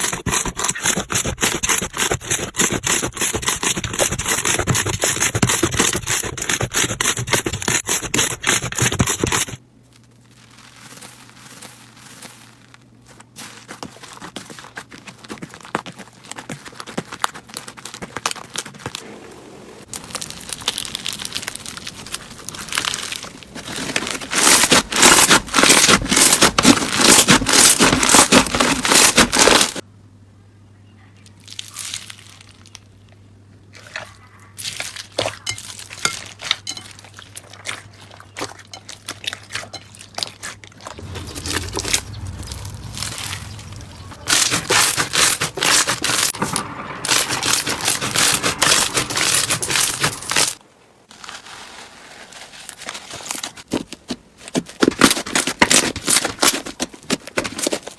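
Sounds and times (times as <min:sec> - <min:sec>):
slime crackling and crunching: 0:08.4 - 0:14.1, 0:19.8 - 0:29.8, 0:31.4 - 0:32.9, 0:33.8 - 0:53.8.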